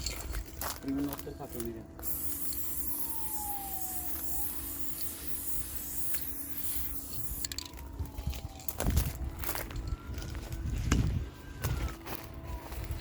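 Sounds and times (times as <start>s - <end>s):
spray paint can hissing: 2.0s - 7.8s
faint whistling tone: 2.1s - 8.6s.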